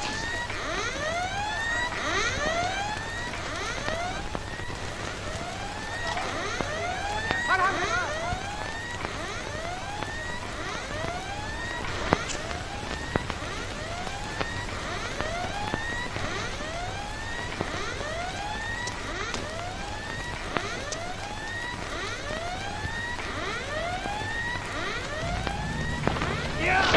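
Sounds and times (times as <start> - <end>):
siren-like whooping tones: 0.0 - 26.9
low steady hum: 25.1 - 26.9.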